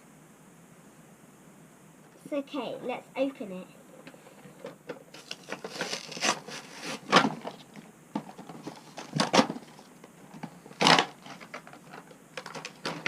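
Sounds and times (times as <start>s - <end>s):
plastic packaging crinkling: 5.1s - 7.7s
sharp packaging crackles: 5.1s - 7.7s.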